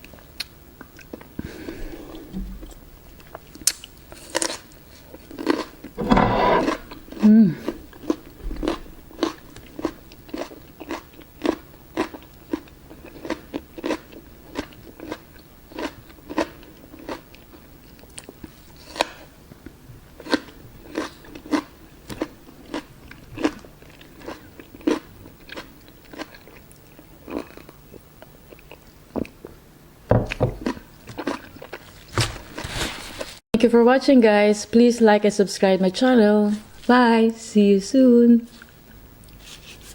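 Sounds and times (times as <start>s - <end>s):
chewing crunchy food: 0.0s - 6.0s, 6.6s - 29.6s, 30.3s - 32.8s.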